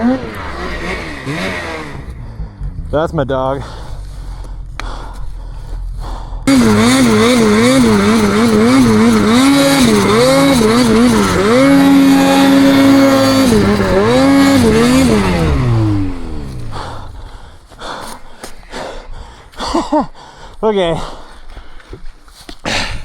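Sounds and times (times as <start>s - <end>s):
snowmobile engine revving: 0.0s - 4.6s, 6.5s - 17.4s.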